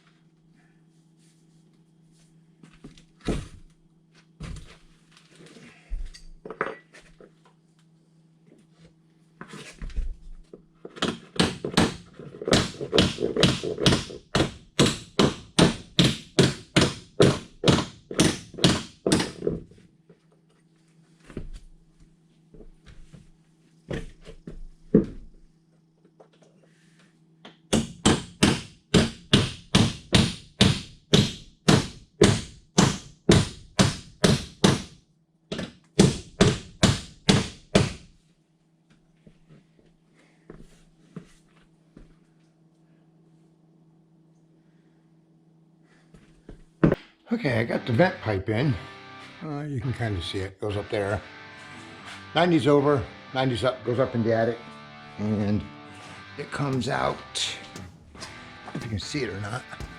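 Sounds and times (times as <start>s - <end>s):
steady low hum: 54.7s - 59.9s
hand tool strokes: 55.9s - 59.9s.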